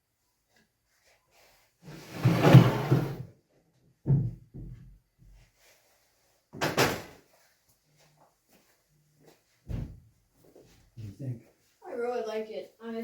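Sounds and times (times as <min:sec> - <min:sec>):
wooden shelf bumping and scraping: 0:01.9 - 0:03.2.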